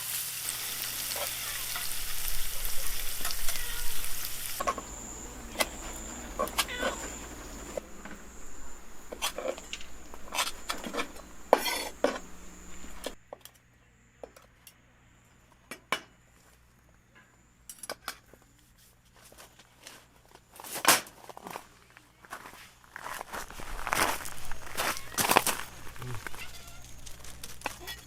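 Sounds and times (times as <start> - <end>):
cookware and cutlery clinking: 10.3 - 12.3.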